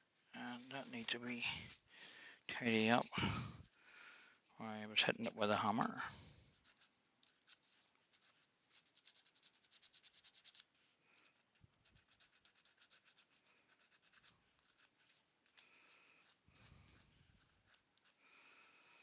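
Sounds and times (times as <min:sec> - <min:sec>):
hand-sanding wood: 0:07.6 - 0:15.2.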